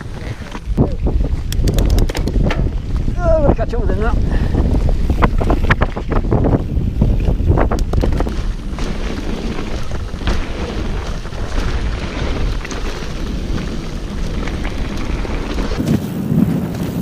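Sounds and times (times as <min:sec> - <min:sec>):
bike rattles: 0:00.0 - 0:17.0
wind buffeting microphone: 0:00.0 - 0:17.0
low rumble of tyres: 0:04.3 - 0:17.0.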